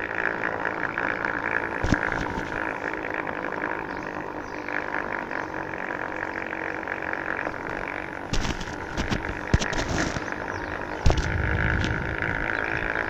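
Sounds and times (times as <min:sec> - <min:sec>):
electric motor whining: 0:00.0 - 0:13.0
low rumble: 0:07.7 - 0:13.0.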